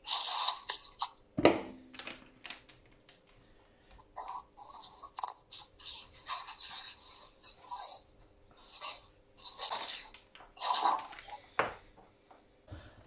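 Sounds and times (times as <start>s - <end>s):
rustling and scraping: 4.2s - 12.2s.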